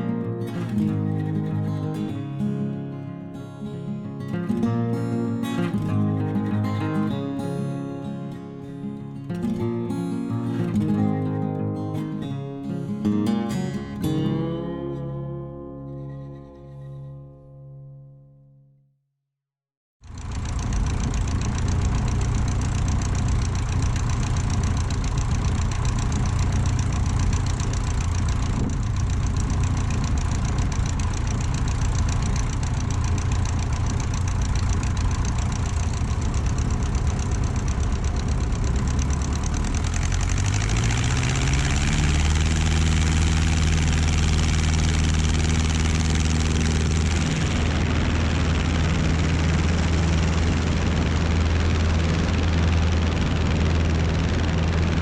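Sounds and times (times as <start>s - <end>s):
aircraft piston engine running: 20.1s - 55.0s.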